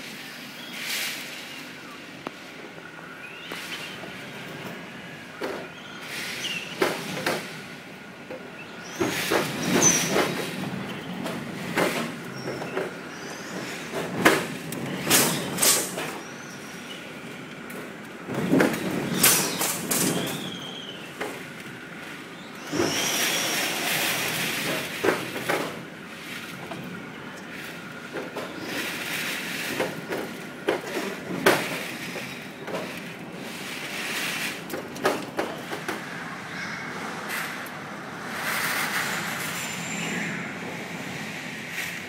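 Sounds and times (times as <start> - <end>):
whistling squeals: 22.6 - 23.8.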